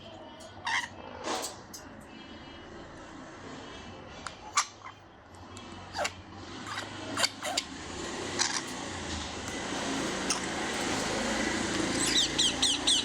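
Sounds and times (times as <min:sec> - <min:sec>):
lovebirds chirping: 0:09.5 - 0:13.0.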